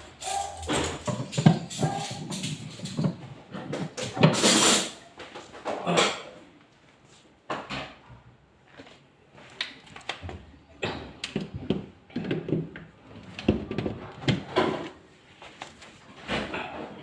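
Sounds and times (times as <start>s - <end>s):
tools and parts knocking: 0.2s - 4.9s.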